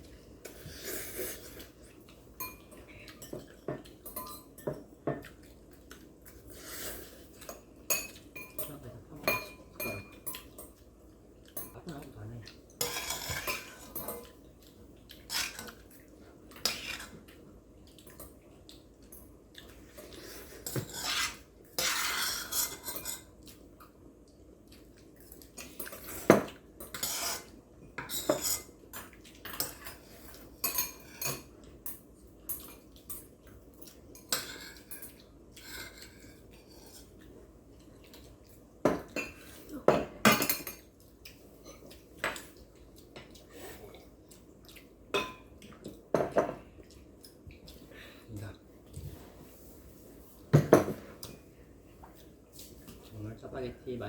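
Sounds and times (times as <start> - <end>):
spoons and chopsticks clinking on bowls: 2.4 - 5.3, 7.3 - 10.8, 12.7 - 14.4, 20.5 - 23.3, 25.6 - 33.3, 34.2 - 37.1.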